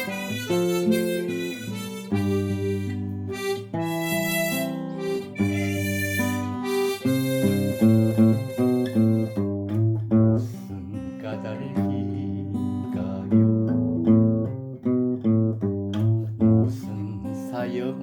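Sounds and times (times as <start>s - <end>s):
acoustic guitar strumming: 0.0s - 18.0s.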